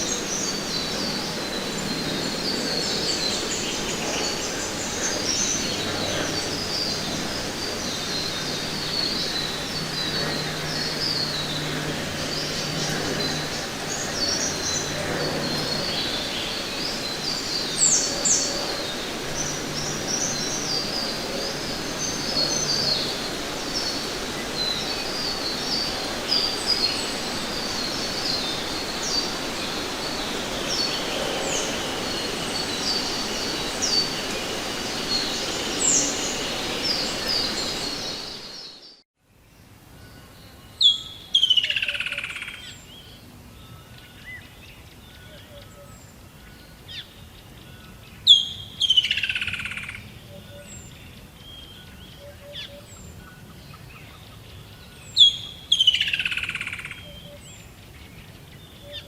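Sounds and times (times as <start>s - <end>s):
small birds chirping and trilling: 0.0s - 39.0s
steady background hiss: 0.0s - 59.0s.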